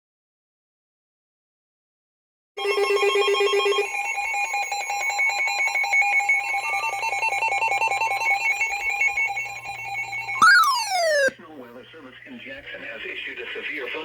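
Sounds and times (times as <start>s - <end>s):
electronic alert trill: 10.4s - 11.3s.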